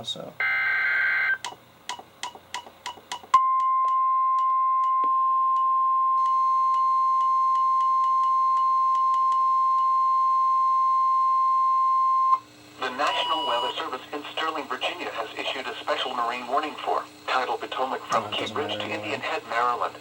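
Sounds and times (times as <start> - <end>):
loud steady alarm tone: 0.4 - 1.5, 3.4 - 13.9.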